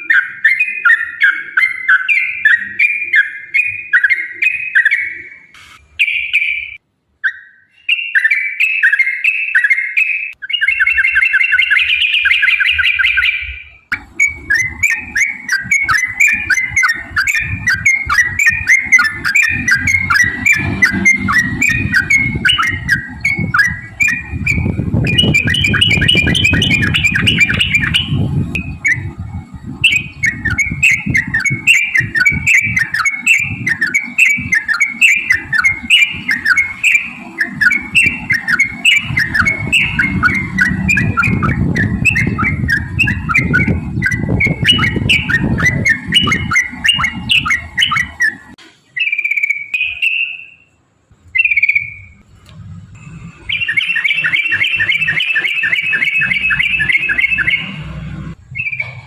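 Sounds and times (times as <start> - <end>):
bird singing bubbly notes: 0.0 - 52.2, 52.9 - 59.0
low rumbling noise: 13.4 - 49.0, 50.7 - 59.0.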